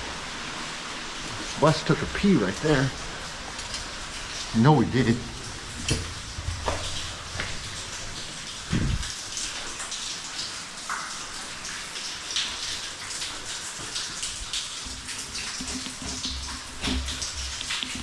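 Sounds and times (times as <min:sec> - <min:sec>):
water trickling and splashing: 0:00.0 - 0:18.0
low pulsing hum: 0:04.7 - 0:09.3.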